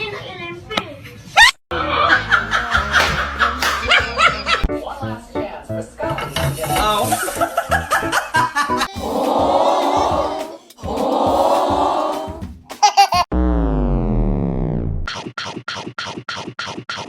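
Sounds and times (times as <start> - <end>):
people talking and laughing: 1.7 - 5.3, 5.9 - 10.4
background music: 1.7 - 12.8.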